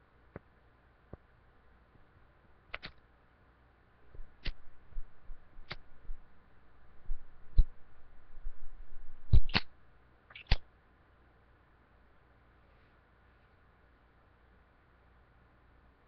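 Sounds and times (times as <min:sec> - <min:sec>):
lighter metallic clicks: 0:09.4 - 0:09.7, 0:10.3 - 0:10.6.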